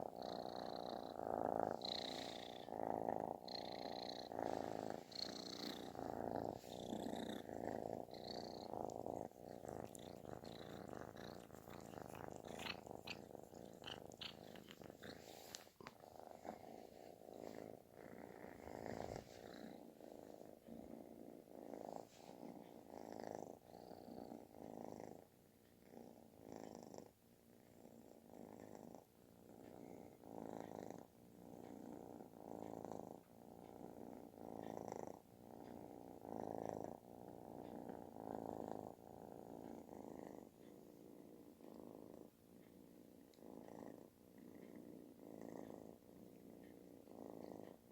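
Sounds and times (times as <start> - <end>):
kitten purring loudly: 0.0 - 47.9.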